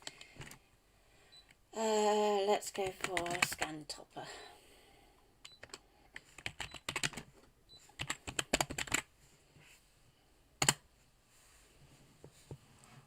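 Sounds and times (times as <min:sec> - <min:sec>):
typing on keyboard: 0:02.8 - 0:03.7, 0:05.5 - 0:07.3, 0:08.0 - 0:09.1.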